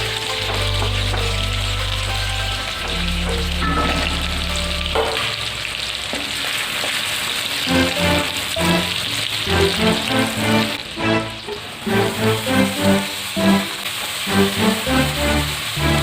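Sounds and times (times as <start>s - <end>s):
background music: 0.0s - 6.0s, 7.6s - 16.0s
food sizzling in a hot pan: 0.0s - 9.7s.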